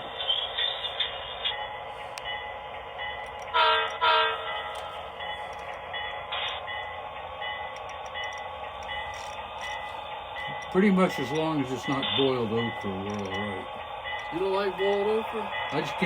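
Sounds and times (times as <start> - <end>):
model train running sound: 0.0 - 16.0
model train horn blasts: 3.5 - 4.5.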